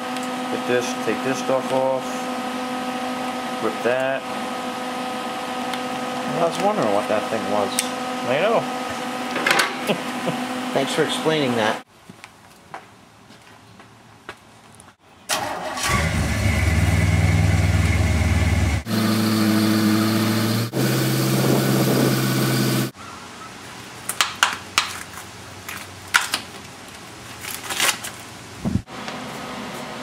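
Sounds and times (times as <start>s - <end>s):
engine running loudly: 16.0s - 22.9s.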